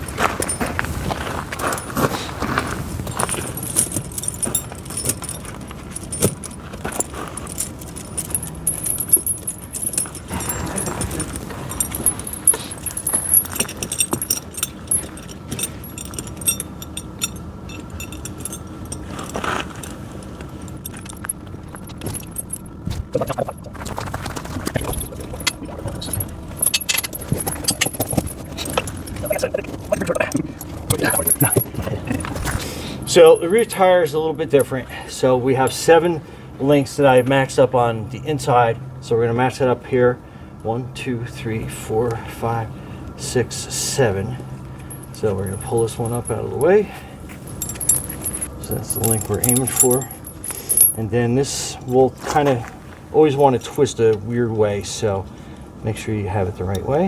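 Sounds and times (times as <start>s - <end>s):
steel chains jingling and rattling: 0.0s - 36.0s, 43.5s - 52.7s.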